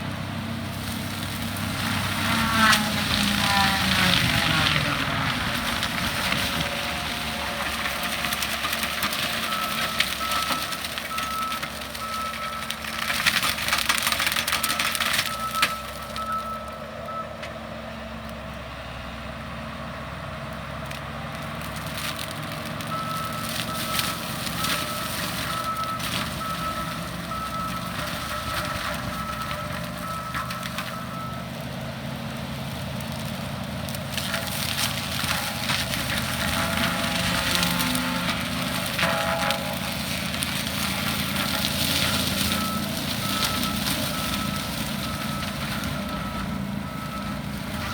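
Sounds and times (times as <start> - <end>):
wood being shredded: 0.0 - 17.0, 20.2 - 47.9
skid steer engine running: 0.0 - 47.9
reversing alarm beeping: 9.3 - 12.7, 14.6 - 17.4, 22.9 - 31.6, 42.1 - 47.9.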